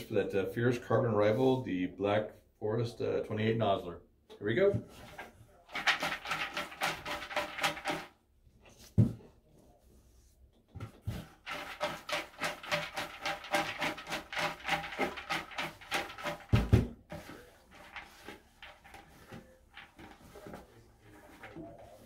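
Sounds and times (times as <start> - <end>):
tickets rustling and scraping: 10.8 - 22.0.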